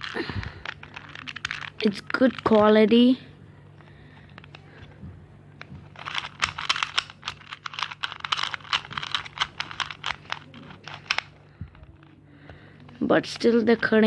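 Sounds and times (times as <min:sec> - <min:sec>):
puzzle cube clicking: 0:00.0 - 0:02.7, 0:05.9 - 0:12.1.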